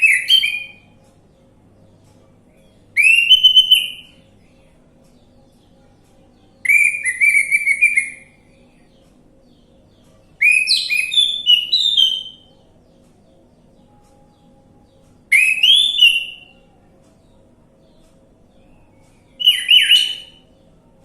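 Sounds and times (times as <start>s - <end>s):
thrush singing whistled notes: 3.0s - 4.2s, 6.6s - 8.4s, 10.4s - 12.5s, 15.3s - 16.5s, 19.4s - 20.5s.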